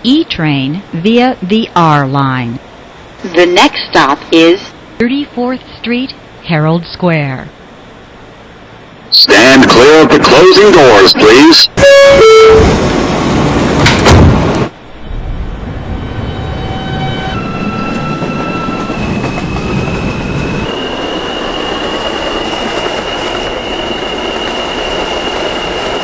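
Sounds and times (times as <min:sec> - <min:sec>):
train electric propulsion whine: 0:00.0 - 0:26.0
subway car doors closing: 0:09.1 - 0:21.4
train wheels rumbling on rails: 0:15.4 - 0:26.0.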